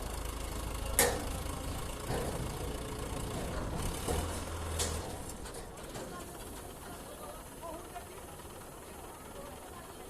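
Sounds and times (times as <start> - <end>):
machine engine idling: 0.0 - 10.0.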